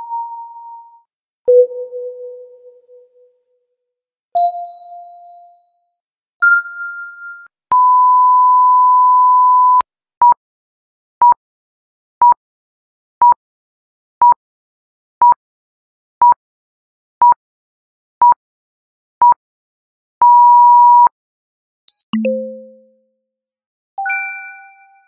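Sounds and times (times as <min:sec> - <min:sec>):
long censor bleep: 0:07.7 - 0:09.8, 0:20.2 - 0:21.1
short electronic beeps: 0:21.9 - 0:22.7.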